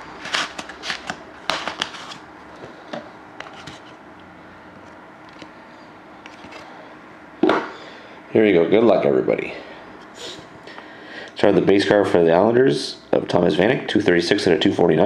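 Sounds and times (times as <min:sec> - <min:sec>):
cards and packaging rustling: 0:00.0 - 0:04.0, 0:06.2 - 0:06.7.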